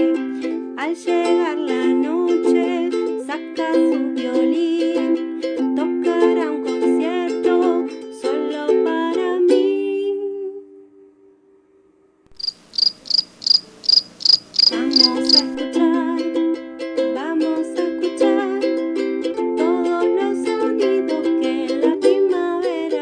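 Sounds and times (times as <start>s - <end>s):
ukulele music: 0.0s - 11.1s, 14.7s - 23.0s
cricket chirping: 12.3s - 15.6s.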